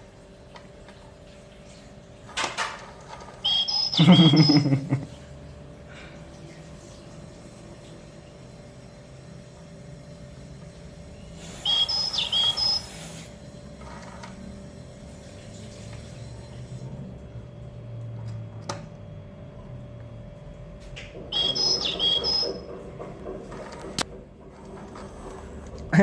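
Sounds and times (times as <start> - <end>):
toy playing high bird chirps: 3.4 - 4.7, 11.6 - 13.1, 21.3 - 22.7.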